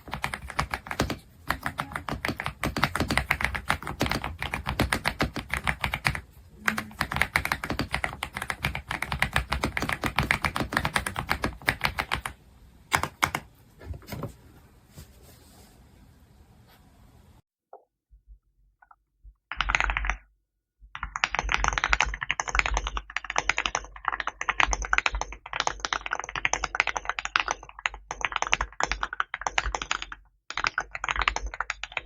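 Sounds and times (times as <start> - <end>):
mechanical keyboard typing: 0.0 - 13.5, 19.5 - 20.2, 21.0 - 32.0.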